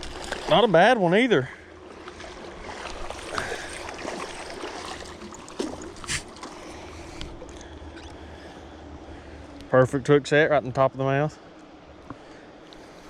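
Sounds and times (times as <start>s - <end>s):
river water running and lapping: 0.0s - 13.0s
short splashes or knocks: 2.1s - 6.6s.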